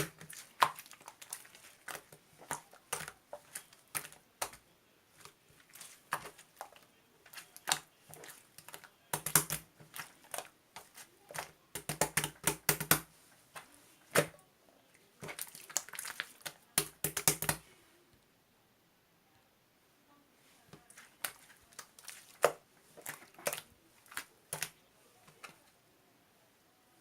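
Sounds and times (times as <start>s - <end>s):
sharp clicks and taps: 9.1s - 9.6s, 11.4s - 13.0s, 16.8s - 17.6s.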